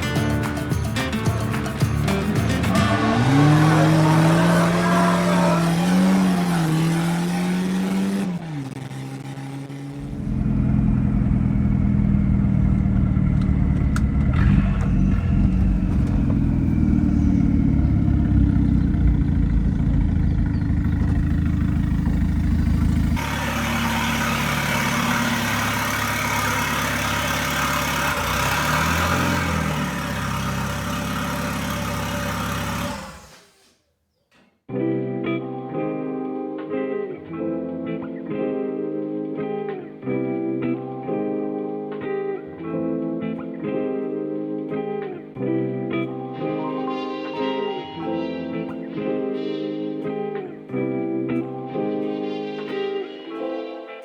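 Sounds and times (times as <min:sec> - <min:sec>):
car engine revving hard: 0:02.6 - 0:33.4.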